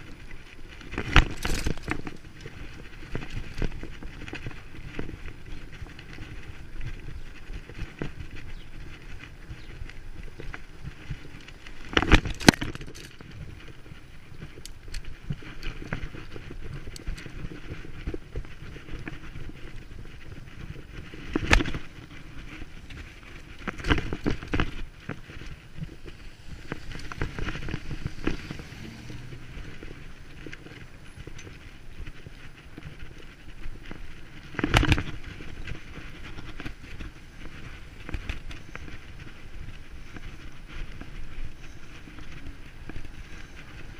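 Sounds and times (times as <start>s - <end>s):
bicycle rattle and tyre noise: 0.0s - 43.9s.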